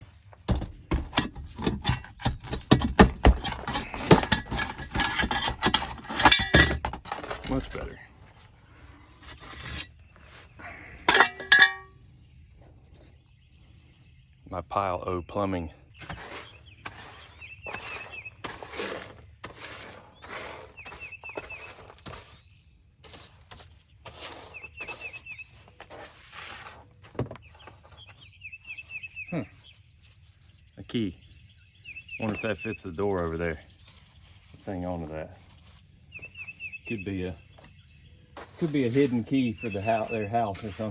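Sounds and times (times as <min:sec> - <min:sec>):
scraping and rustling: 0:00.0 - 0:11.9, 0:16.0 - 0:30.8, 0:32.2 - 0:40.9
demolition knocks and scraping: 0:00.3 - 0:08.1, 0:38.4 - 0:40.9.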